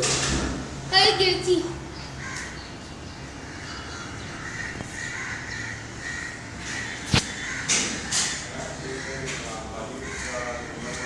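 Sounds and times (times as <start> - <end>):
bird calling: 1.1 - 11.0.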